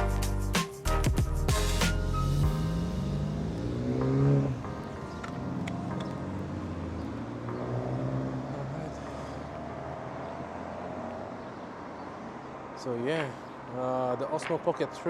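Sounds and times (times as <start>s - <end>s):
car engine humming: 2.1s - 12.4s.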